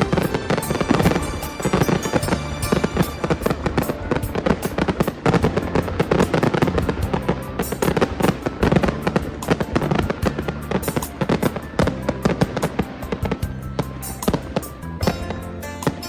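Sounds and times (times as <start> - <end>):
fireworks bangs and crackles: 0.0 - 16.0
music with low held notes: 0.0 - 16.0.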